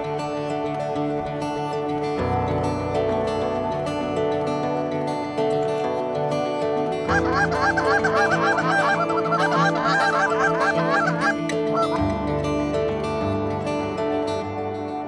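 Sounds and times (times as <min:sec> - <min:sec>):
soft guitar music: 0:00.0 - 0:15.0
geese honking: 0:07.1 - 0:12.0.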